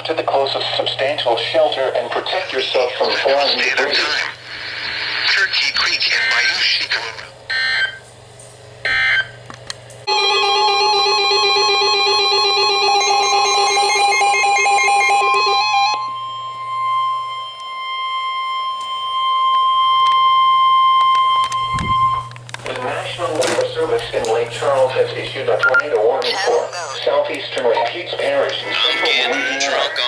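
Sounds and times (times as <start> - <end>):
warbling electronic tones: 10.1 - 22.4.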